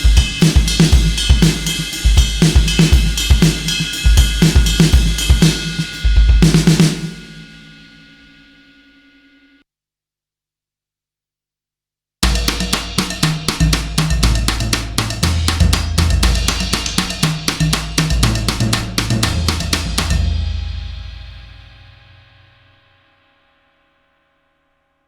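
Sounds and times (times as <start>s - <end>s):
rock drum kit groove: 0.0s - 8.0s, 12.2s - 20.5s.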